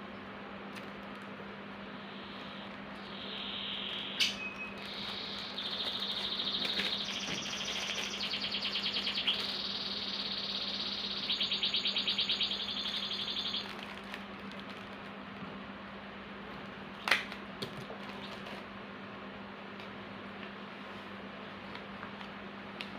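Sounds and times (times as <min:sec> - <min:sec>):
steady low hum: 0:00.0 - 0:22.9
songbird trilling: 0:02.1 - 0:13.8.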